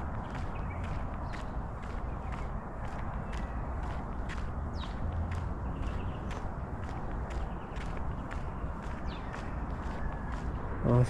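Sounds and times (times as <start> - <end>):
footsteps walking: 0.0 - 10.8.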